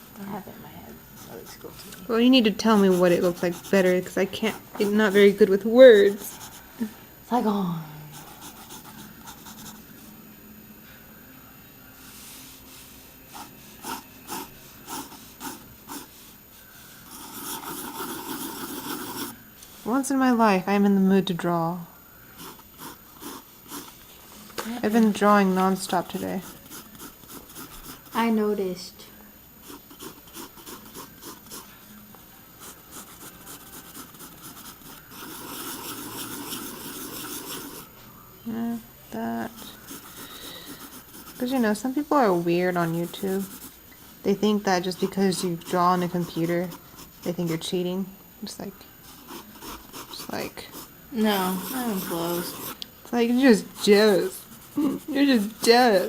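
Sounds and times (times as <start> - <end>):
pencil scratching on paper: 1.2 - 6.6, 8.1 - 9.8, 12.2 - 16.3, 17.0 - 19.4, 22.4 - 24.0, 24.8 - 28.4, 29.6 - 31.7, 32.6 - 37.9, 39.4 - 47.7, 49.1 - 56.0.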